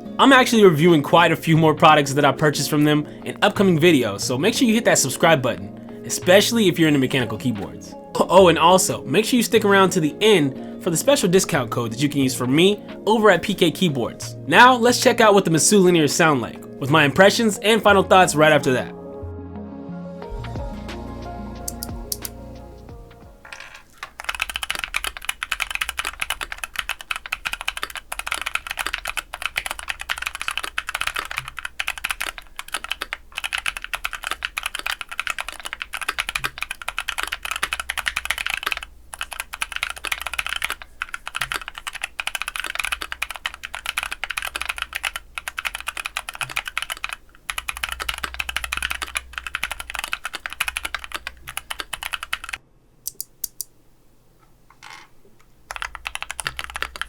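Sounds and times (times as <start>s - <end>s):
fast mechanical keyboard typing: 21.7s - 22.3s, 23.4s - 53.6s, 55.7s - 57.0s.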